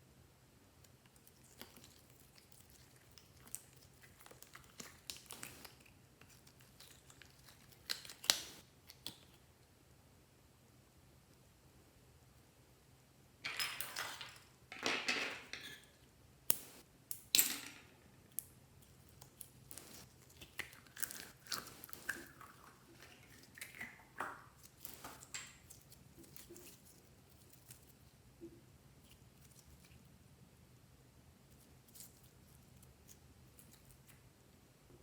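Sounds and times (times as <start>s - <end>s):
slime squishing and crackling: 1.1s - 9.3s, 19.0s - 27.7s.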